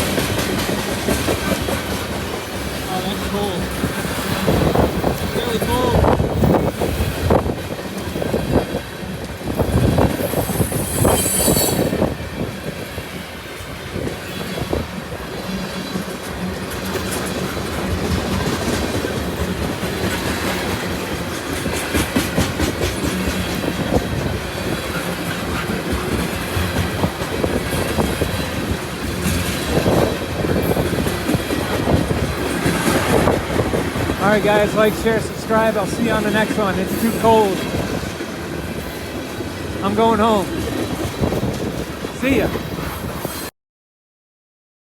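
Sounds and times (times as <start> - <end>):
clickety-clack over rail joints: 0.0 - 43.5
train wheels rumbling on rails: 0.0 - 43.5
high wheel squeal: 10.3 - 12.0.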